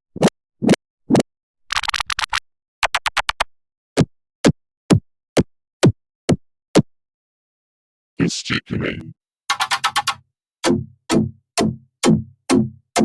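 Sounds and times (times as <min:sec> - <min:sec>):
rattling runs of clicks: 0:09.5 - 0:10.2.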